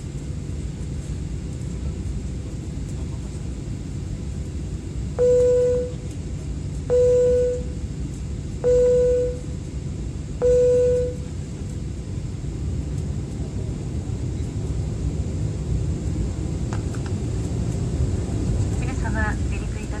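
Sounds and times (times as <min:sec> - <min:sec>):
airliner cabin rumble: 0:00.0 - 0:20.0.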